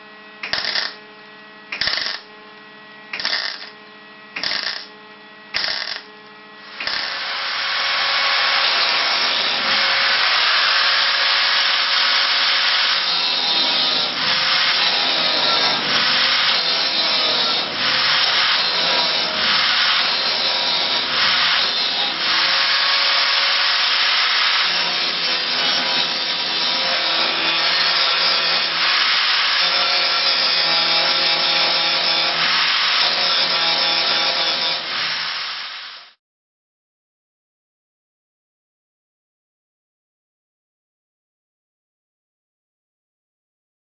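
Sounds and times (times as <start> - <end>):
welder arc crackling: 0.4 - 1.0, 1.7 - 2.3, 3.2 - 3.8, 4.4 - 4.9, 5.6 - 36.0.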